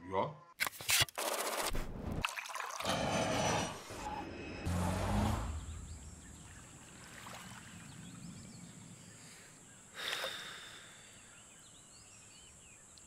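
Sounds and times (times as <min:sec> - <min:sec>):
bird chirps: 0:05.6 - 0:10.0.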